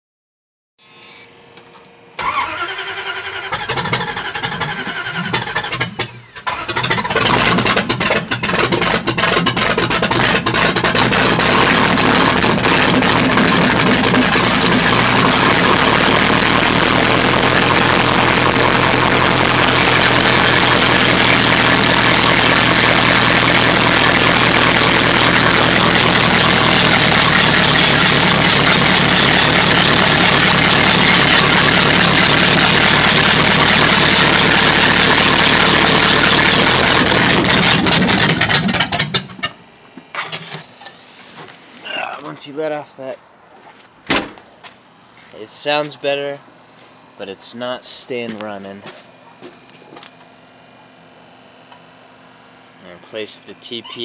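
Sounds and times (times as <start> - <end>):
engine cranking and starting: 2.2 - 39.6.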